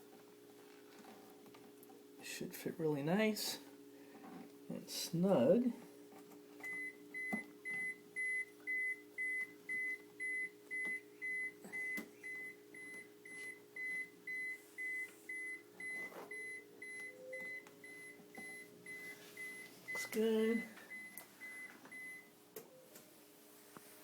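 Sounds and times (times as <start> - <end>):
refrigerator alarm beeping: 6.6 - 22.8.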